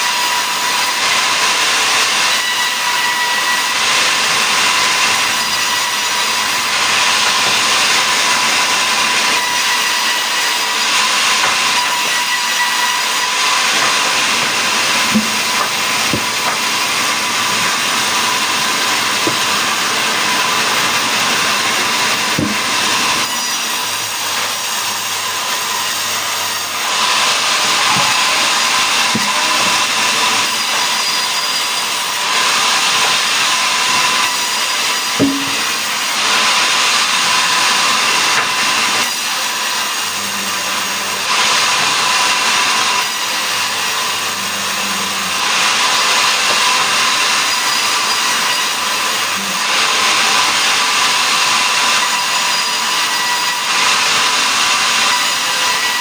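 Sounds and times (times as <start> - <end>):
power saw cutting wood: 0.0 - 56.0
short knocks: 15.1 - 16.9, 22.4 - 22.9, 35.2 - 36.2.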